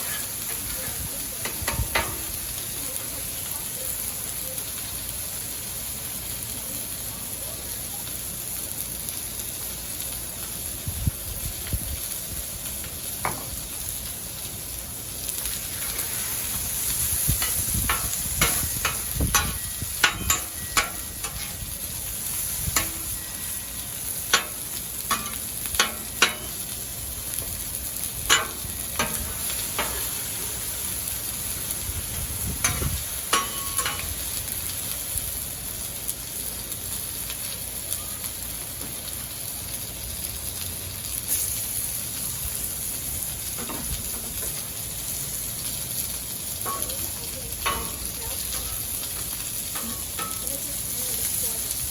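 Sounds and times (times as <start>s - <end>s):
metal spatula scraping steel: 0.0s - 0.8s, 15.6s - 26.8s, 28.3s - 30.4s, 32.6s - 34.1s
food sizzling on griddle: 0.0s - 51.9s.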